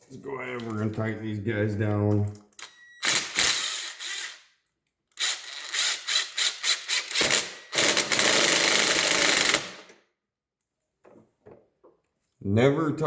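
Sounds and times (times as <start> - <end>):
power tool running in bursts: 5.2 - 9.8.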